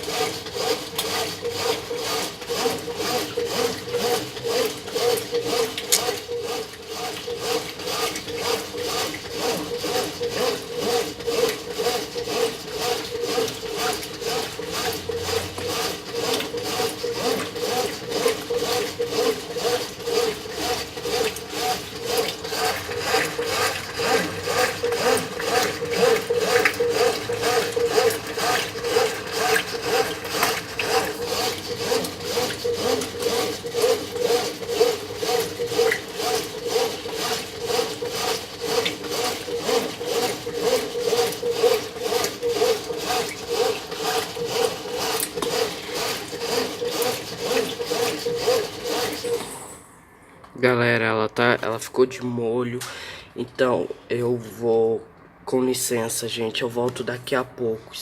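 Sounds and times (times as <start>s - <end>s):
washing machine agitating: 0.0s - 50.0s.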